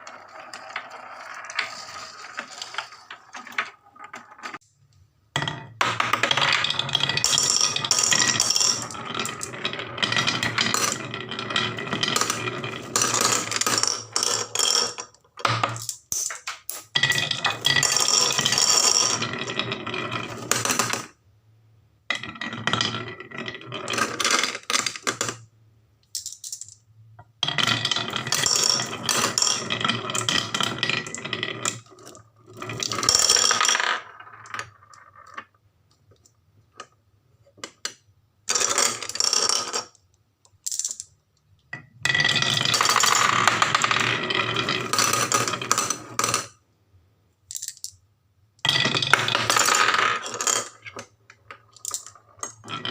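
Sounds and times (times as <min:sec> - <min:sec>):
marbles rattling down wooden run: 0:00.0 - 0:04.6, 0:05.4 - 0:21.2, 0:27.4 - 0:35.6, 0:42.1 - 0:46.6, 0:48.6 - 0:52.9.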